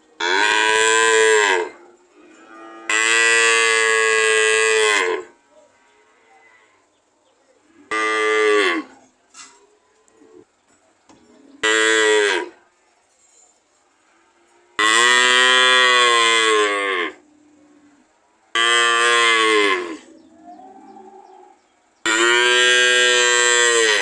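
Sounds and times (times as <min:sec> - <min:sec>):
cows mooing: 0:00.2 - 0:06.7, 0:07.8 - 0:09.0, 0:11.6 - 0:12.6, 0:14.2 - 0:24.0.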